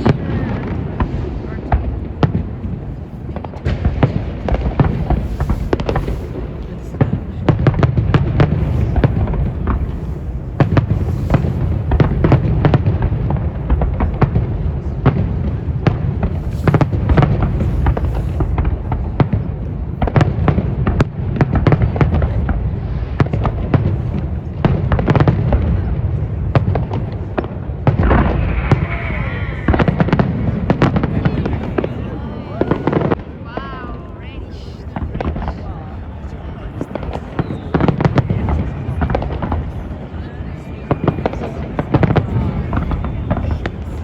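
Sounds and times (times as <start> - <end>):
low rumble of booms: 0.0 - 31.9
fireworks bangs and crackles: 0.0 - 44.0
whistling firework glides: 27.8 - 33.3, 36.6 - 40.0, 40.9 - 44.0.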